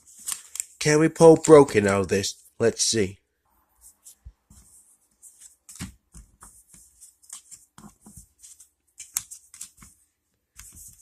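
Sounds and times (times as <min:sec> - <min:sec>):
cards clicking and sliding: 0:00.1 - 0:02.1, 0:05.3 - 0:11.0.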